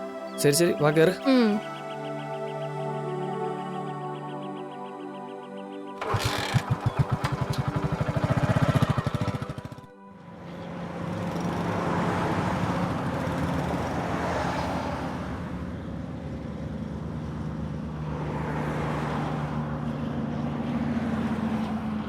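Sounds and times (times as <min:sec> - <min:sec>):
road and traffic noise: 0:00.0 - 0:02.0, 0:06.0 - 0:22.0
vehicle engine running: 0:06.0 - 0:09.9.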